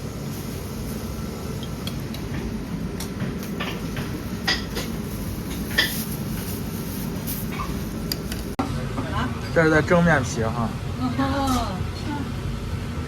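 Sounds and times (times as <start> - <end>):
dishes and utensils clinking: 4.4 - 6.1.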